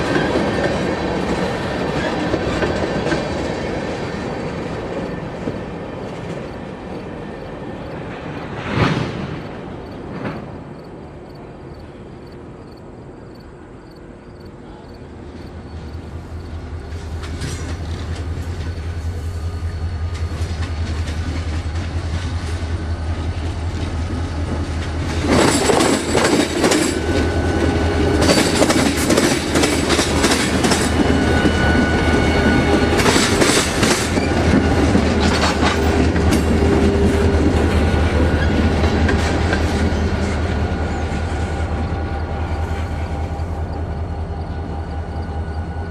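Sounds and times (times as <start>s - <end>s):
wheels clacking over rail joints: 0.0s - 10.8s, 15.7s - 43.6s
train wheels squealing: 25.4s - 36.4s, 39.6s - 45.9s.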